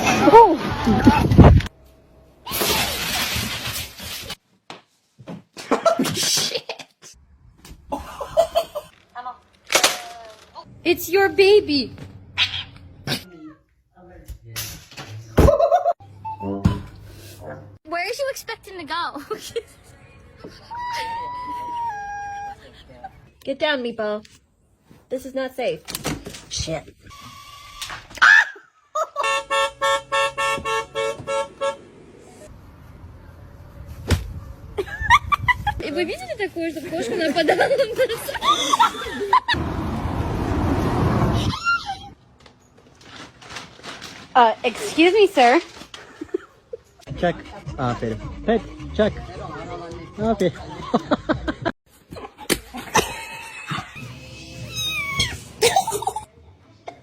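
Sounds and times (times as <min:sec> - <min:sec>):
short horn honks: 0:29.2 - 0:31.9
background music: 0:47.1 - 0:51.6
cat meowing: 0:54.5 - 0:55.5.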